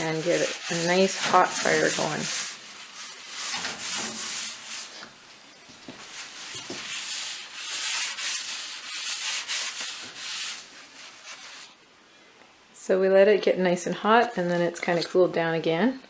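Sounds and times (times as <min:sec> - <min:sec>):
paper towel wiping metal stove top: 0:00.0 - 0:11.8.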